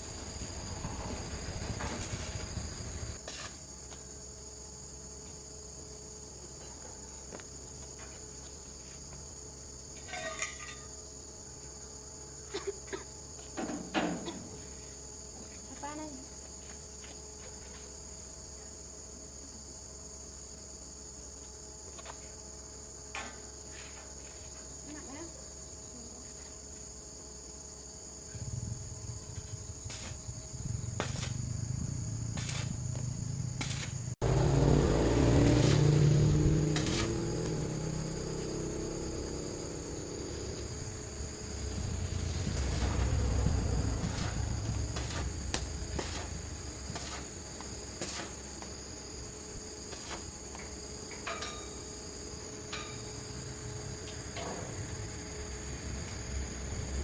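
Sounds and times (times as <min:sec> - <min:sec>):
high-pitched insect chorus: 0:00.0 - 0:57.0
low rumble: 0:28.4 - 0:46.8.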